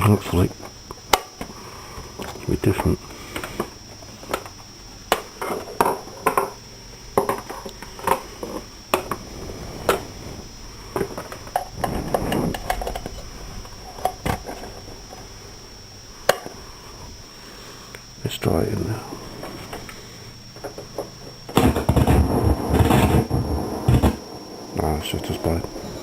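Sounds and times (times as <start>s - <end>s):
high-pitched whine: 20.5s - 26.0s.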